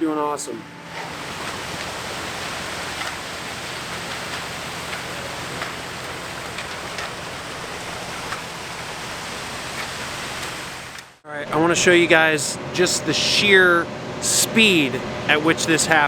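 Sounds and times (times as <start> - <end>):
engine humming low: 0.2 - 16.0
steady hiss: 1.0 - 11.2.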